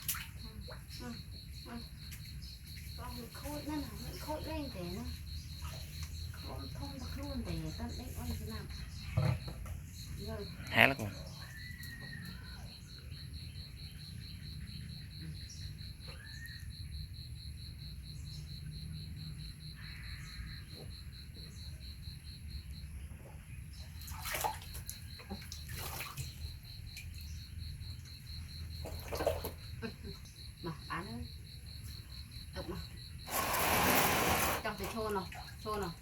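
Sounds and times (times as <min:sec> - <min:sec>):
water sloshing and splashing: 0:00.0 - 0:00.9, 0:02.9 - 0:08.4, 0:23.9 - 0:27.3, 0:28.0 - 0:29.8, 0:33.2 - 0:36.0
insects chirping: 0:00.0 - 0:36.0.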